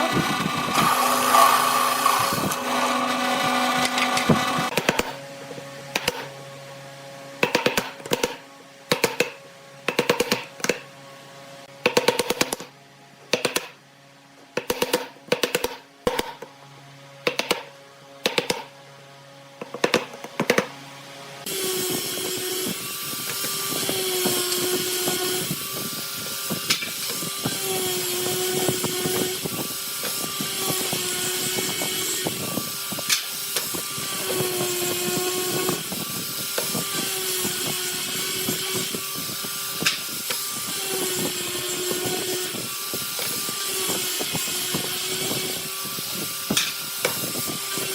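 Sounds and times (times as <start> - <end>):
power tool running: 0.0 - 6.5, 19.6 - 47.9.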